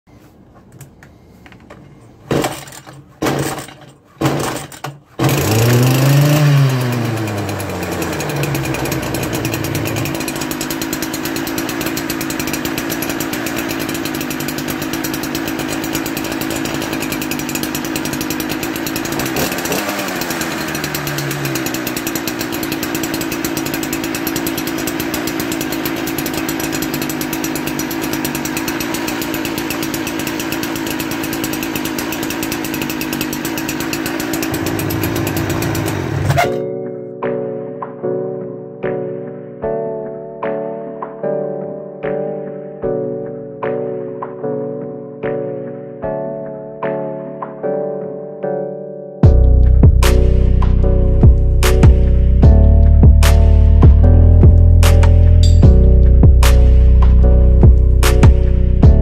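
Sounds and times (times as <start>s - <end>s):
string trimmer engine revving: 2.3s - 36.7s, 49.2s - 59.0s.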